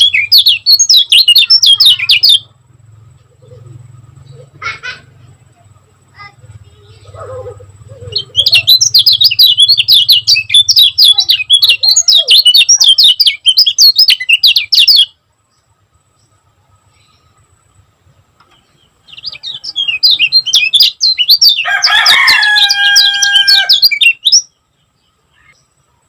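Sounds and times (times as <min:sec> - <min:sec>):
bird singing high chirps: 0:00.0 - 0:26.0.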